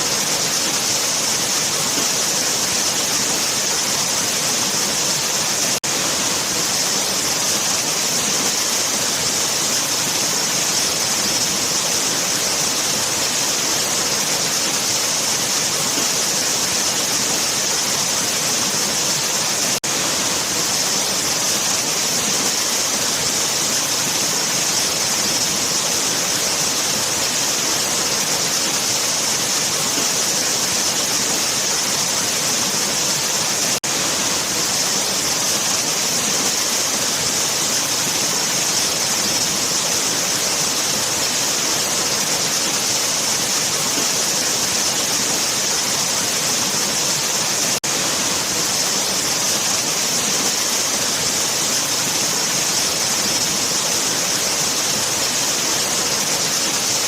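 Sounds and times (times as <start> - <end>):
waterfall roaring: 0.0 - 57.0.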